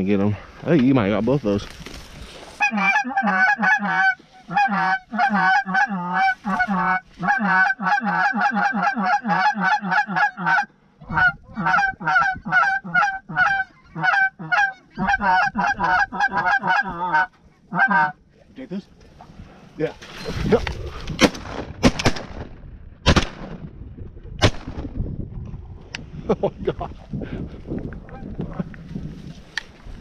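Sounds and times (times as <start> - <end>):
goose honking: 2.6 - 18.2.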